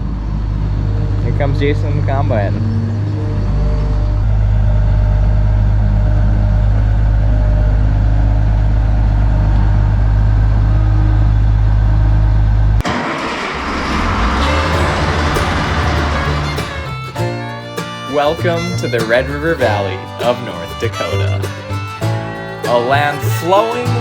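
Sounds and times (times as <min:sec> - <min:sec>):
combine diesel engine humming: 0:00.1 - 0:24.0
music: 0:14.4 - 0:24.0.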